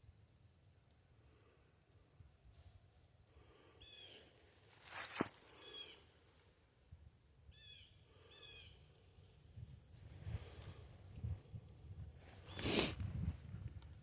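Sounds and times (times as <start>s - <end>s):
bird chirping: 6.8s - 8.9s.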